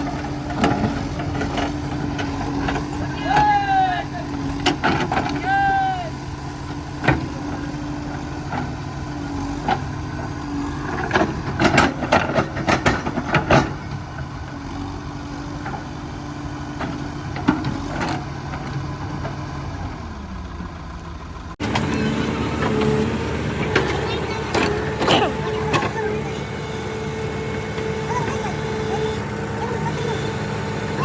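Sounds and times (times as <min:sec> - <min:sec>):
heavy machinery diesel engine: 0:00.0 - 0:31.0
higher-pitched engine sound: 0:21.6 - 0:31.0.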